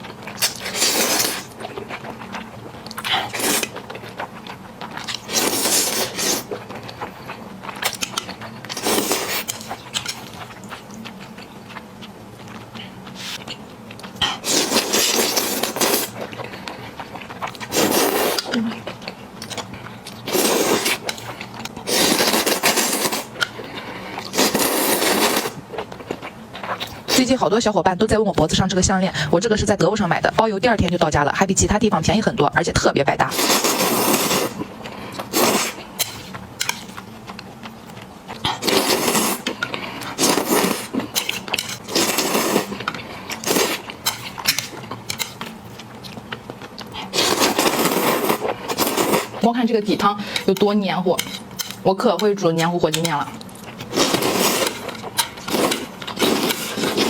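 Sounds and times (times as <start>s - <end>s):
person slurping noodles: 0.4s - 1.6s, 3.0s - 3.8s, 5.1s - 6.5s, 8.7s - 9.8s, 14.2s - 16.2s, 17.6s - 18.7s, 20.2s - 23.3s, 24.3s - 25.6s, 33.3s - 34.6s, 35.2s - 36.3s, 38.5s - 43.9s, 47.0s - 49.4s, 53.8s - 57.0s.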